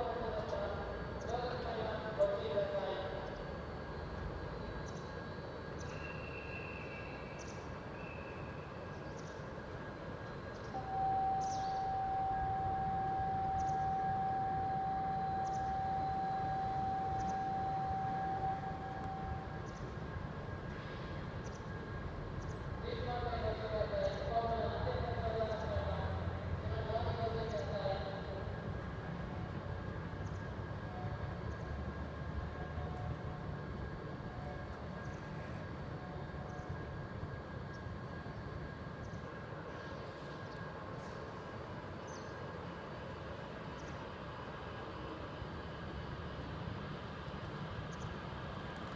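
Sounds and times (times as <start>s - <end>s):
faint steady tones: 0.0s - 48.9s
low train rumble: 0.0s - 48.9s
steady warning tone: 9.8s - 20.7s.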